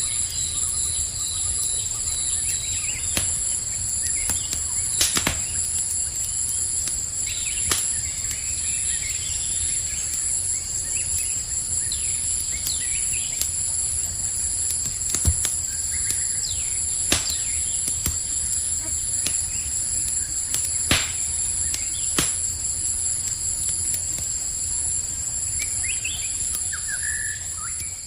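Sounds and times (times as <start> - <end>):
campfire crackling and popping: 0.0 - 28.0
crickets chirring: 0.0 - 28.0
bird chirps: 25.5 - 28.0.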